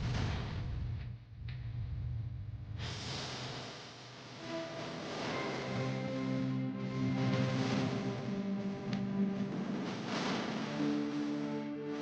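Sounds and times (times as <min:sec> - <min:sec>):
sustained instrumental chords: 0:04.4 - 0:11.9.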